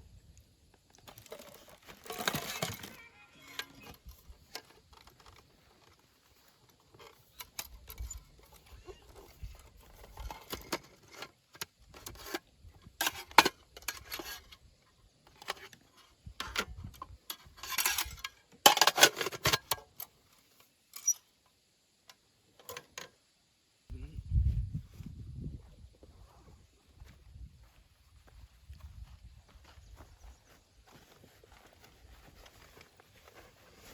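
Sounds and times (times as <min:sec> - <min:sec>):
rustling of handled objects: 0:00.8 - 0:12.4, 0:27.0 - 0:33.9
objects clicking and rattling: 0:01.0 - 0:12.4.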